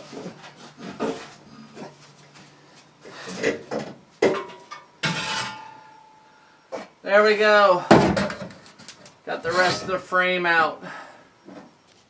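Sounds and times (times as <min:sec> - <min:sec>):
metal clanks and knocks: 0:03.3 - 0:06.1, 0:07.9 - 0:08.9.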